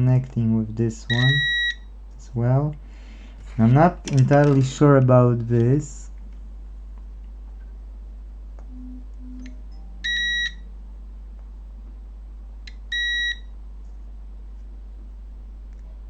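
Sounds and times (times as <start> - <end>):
low mains hum: 0.0 - 16.0
multimeter beeps: 1.1 - 1.9, 8.8 - 10.7, 12.7 - 13.5.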